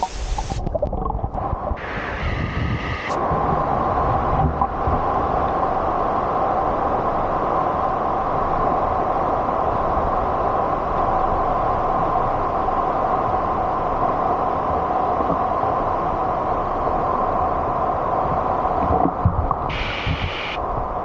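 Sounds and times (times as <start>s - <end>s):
water flowing over rocks: 0.0s - 2.3s.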